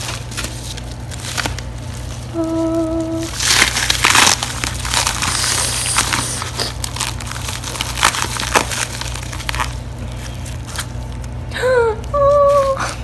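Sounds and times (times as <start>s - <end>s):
packaging crackling and clicking: 3.3s - 11.4s.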